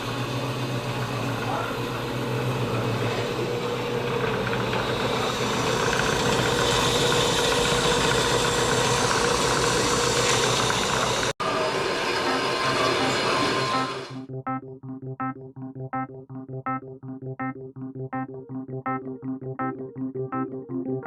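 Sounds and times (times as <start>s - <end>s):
machine humming: 0.0s - 14.3s.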